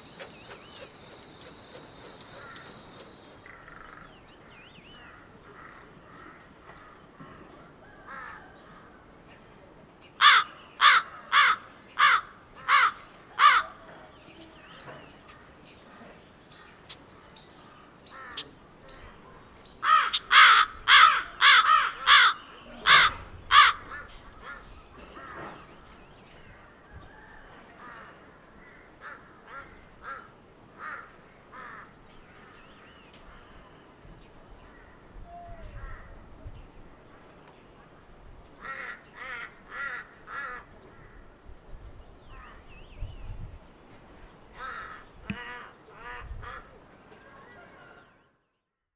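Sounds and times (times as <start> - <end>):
crows cawing: 0.0 - 4.1, 10.2 - 13.7, 19.8 - 25.6, 27.8 - 31.9, 38.6 - 41.2, 44.6 - 46.7.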